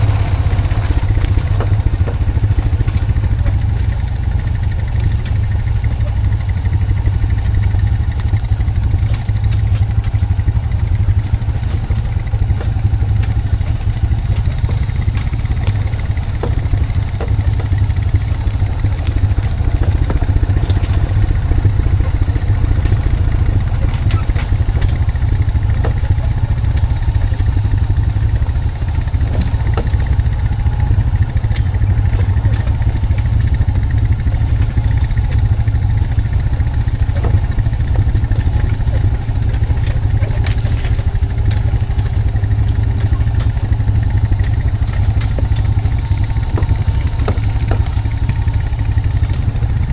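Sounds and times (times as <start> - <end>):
atv engine running: 0.0 - 49.9
light clatter: 0.0 - 49.9.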